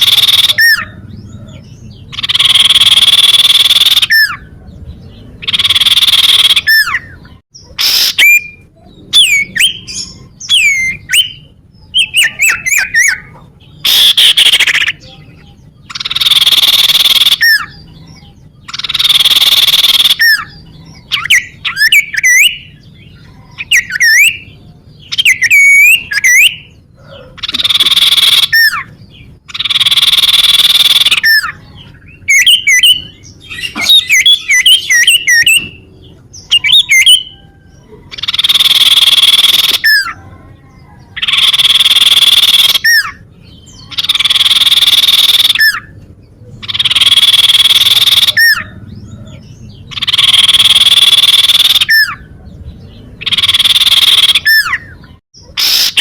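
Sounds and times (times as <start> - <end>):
bird calling with buzzing trills: 0.0 - 40.2, 41.1 - 52.3, 52.9 - 56.0
bird chirping notes: 0.0 - 56.0.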